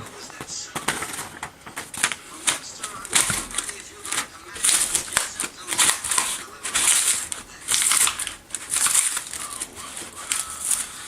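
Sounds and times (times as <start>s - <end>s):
paper shredder tearing paper: 0.0s - 11.0s.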